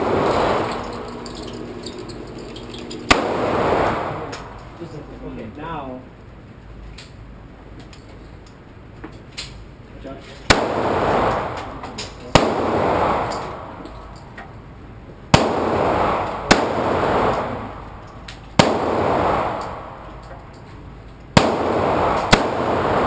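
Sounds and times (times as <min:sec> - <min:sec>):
pistol gunshots with echo: 0:00.0 - 0:05.3, 0:10.5 - 0:14.0, 0:15.3 - 0:20.4, 0:21.4 - 0:23.0.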